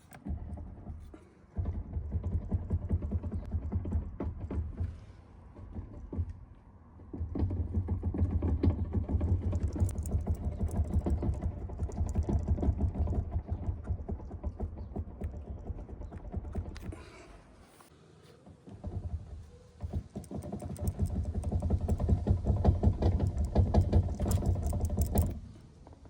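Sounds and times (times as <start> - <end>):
fast flutter: 8.7 - 17.9, 18.7 - 25.5.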